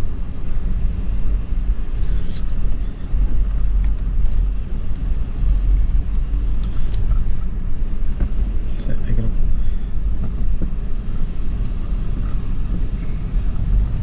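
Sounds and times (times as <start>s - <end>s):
vehicle engine rumbling: 0.0s - 14.0s
short hiss: 2.0s - 2.6s.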